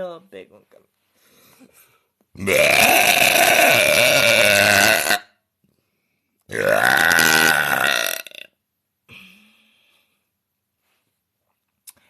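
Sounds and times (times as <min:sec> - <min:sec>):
woman burping loudly: 0:02.4 - 0:05.4, 0:06.5 - 0:08.6.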